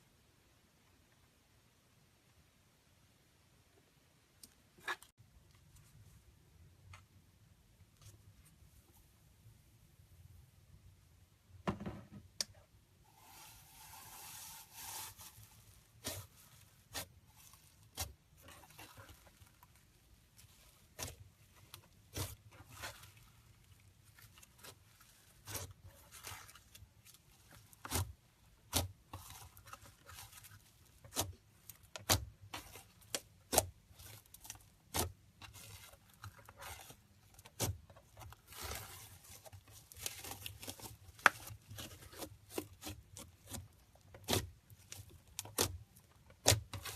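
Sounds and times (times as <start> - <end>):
slime squishing: 13.2 - 46.9.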